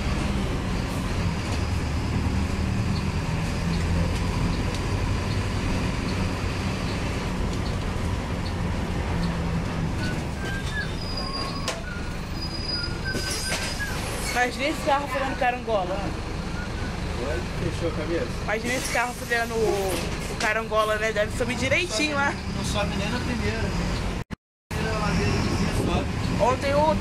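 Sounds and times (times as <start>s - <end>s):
bus diesel engine running: 0.0s - 27.0s
high squeaks: 10.0s - 15.6s.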